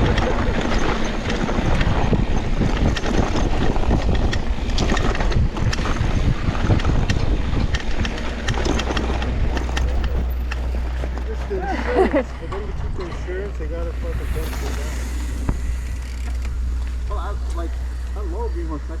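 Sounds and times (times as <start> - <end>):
bike clicking and rattling: 0.0 - 11.7, 15.6 - 17.1
wind buffeting microphone: 0.0 - 18.2.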